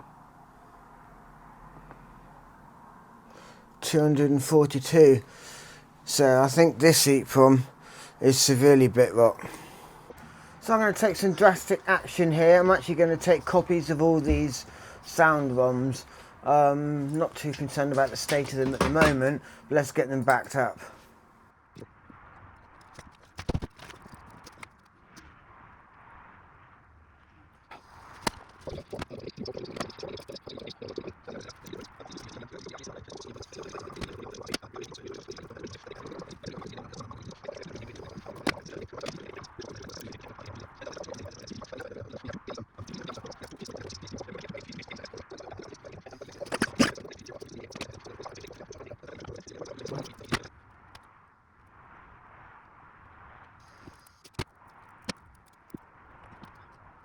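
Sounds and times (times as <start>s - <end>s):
handling noise clicks and rustling: 10.1s - 21.1s.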